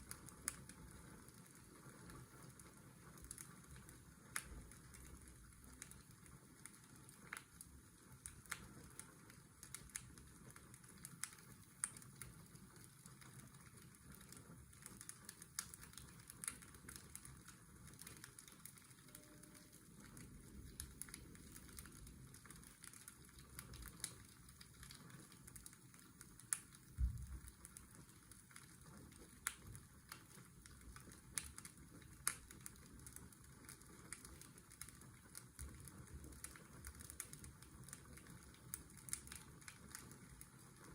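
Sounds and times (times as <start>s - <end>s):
fireplace crackling and popping: 0.0s - 40.9s
low thump: 27.0s - 27.4s.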